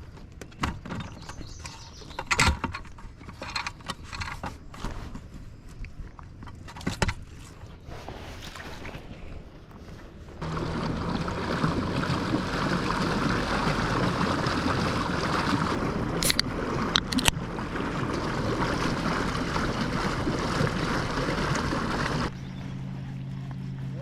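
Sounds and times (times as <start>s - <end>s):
wind: 0.0s - 24.0s
water rushing: 10.4s - 22.3s
electric motor hum: 10.4s - 24.0s.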